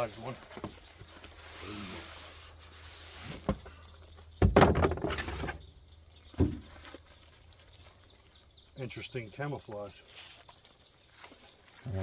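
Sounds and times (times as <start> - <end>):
tarp scraping rustle: 0.0 - 3.7
thump: 4.4 - 5.6, 6.3 - 6.7.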